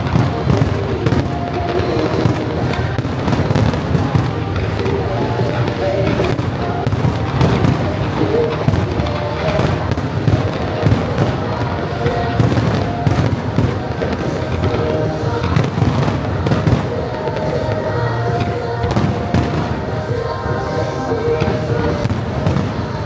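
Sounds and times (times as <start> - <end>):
fireworks bursting and crackling: 0.0 - 23.0
music: 0.0 - 23.0.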